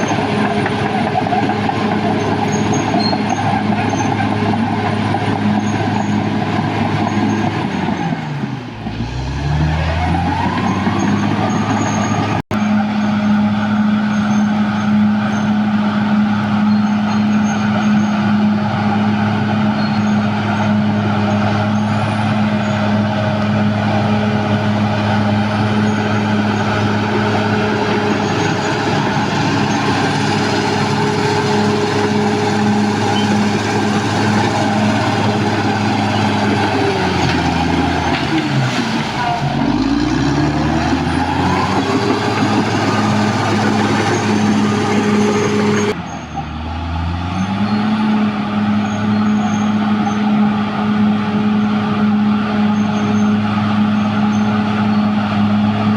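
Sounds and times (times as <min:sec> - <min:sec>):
bulldozer diesel engine: 0:00.0 - 0:55.9.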